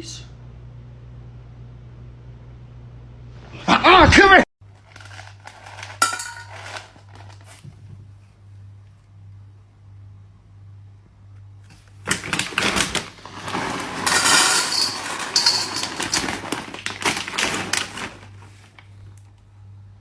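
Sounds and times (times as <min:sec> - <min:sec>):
clatter of small knocks: 0:12.1 - 0:18.2.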